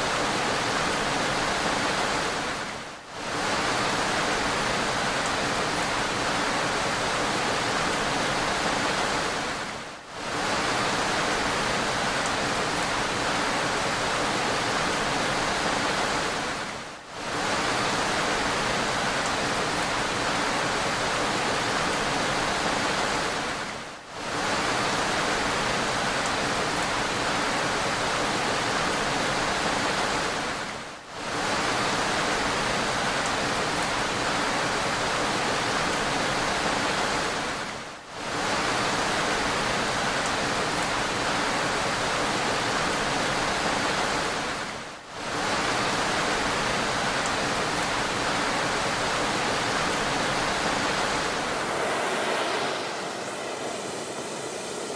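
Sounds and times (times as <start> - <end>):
heavy rain hissing: 31.1 - 54.9.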